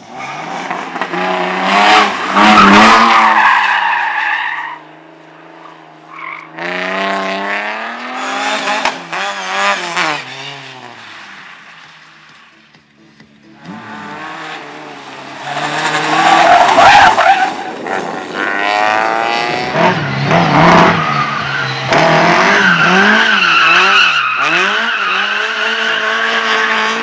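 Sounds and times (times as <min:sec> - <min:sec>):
race car engine revving: 0:00.0 - 0:03.6, 0:06.5 - 0:11.0, 0:13.6 - 0:27.0.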